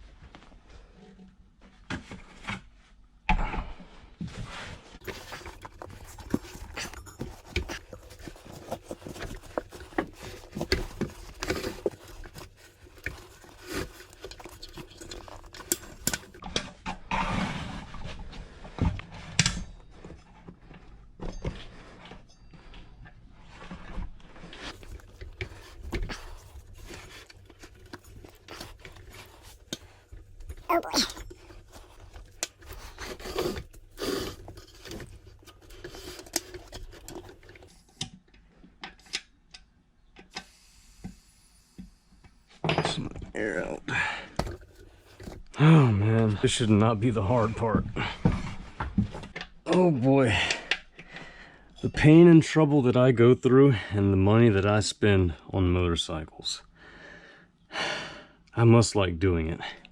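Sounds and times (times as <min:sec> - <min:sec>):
man breathing hard: 0:56.7 - 0:58.4.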